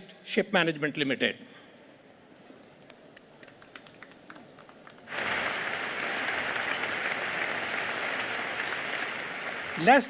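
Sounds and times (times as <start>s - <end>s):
audience applause: 5.1s - 10.0s.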